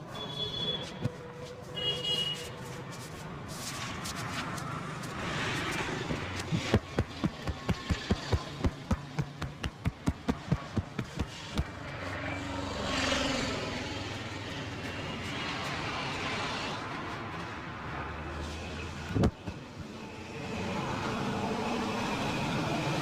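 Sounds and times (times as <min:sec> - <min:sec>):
street traffic: 0:00.0 - 0:23.0
hands slapping skin rapidly: 0:04.2 - 0:11.8.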